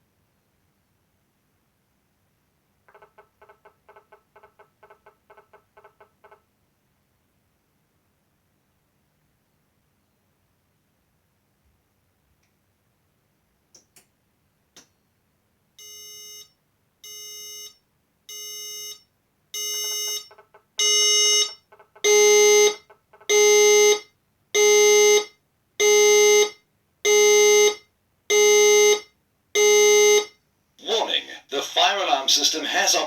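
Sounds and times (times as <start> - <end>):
fire alarm pulsed beeping: 15.8 - 30.4.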